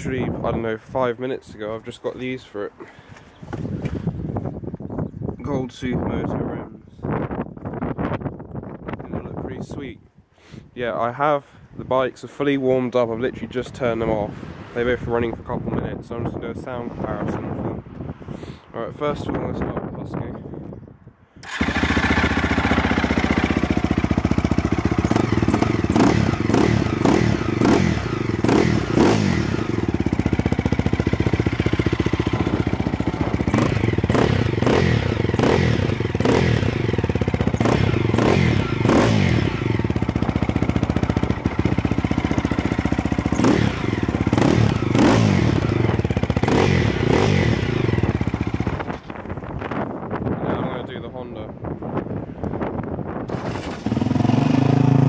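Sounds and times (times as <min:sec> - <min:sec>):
motorcycle engine revving: 0:21.4 - 0:49.1, 0:53.2 - 0:55.0.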